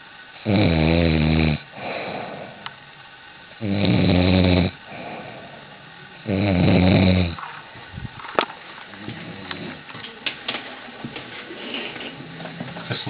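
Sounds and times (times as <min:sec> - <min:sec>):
person snoring loudly: 0:00.4 - 0:02.7, 0:03.6 - 0:07.4, 0:09.0 - 0:09.9
quiet breathing: 0:01.6 - 0:03.3, 0:04.7 - 0:06.6.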